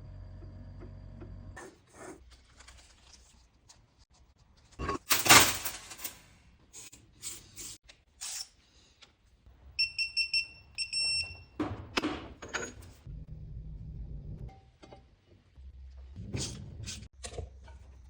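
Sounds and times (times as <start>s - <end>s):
metal parts knocking and scraping: 11.6s - 13.1s.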